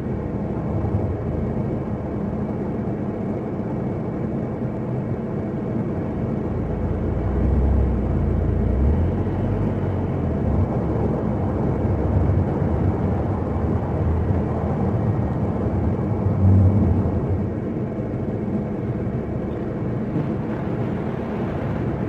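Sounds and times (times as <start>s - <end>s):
car engine rumble: 0.0s - 22.0s
road noise: 0.0s - 22.0s.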